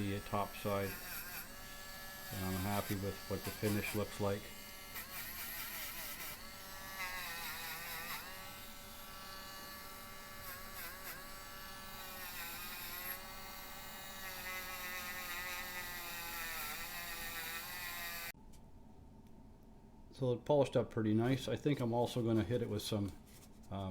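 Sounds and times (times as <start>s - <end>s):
rotary tool polishing metal: 0.0s - 18.3s.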